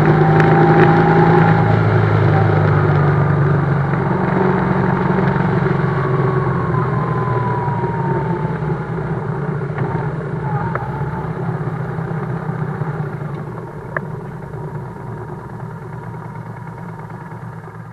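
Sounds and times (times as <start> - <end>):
faint whine falling in pitch: 0.0 - 17.9
motorcycle engine running: 0.0 - 17.9.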